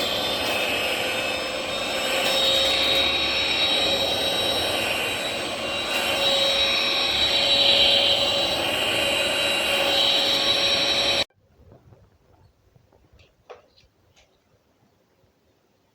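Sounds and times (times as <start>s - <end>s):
stick vacuum motor whine: 0.0s - 11.3s.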